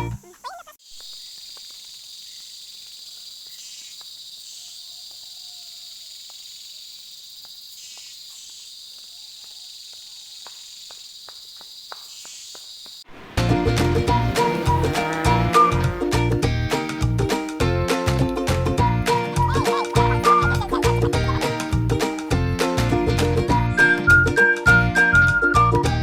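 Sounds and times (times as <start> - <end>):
insect chorus drone: 0.0 - 16.2.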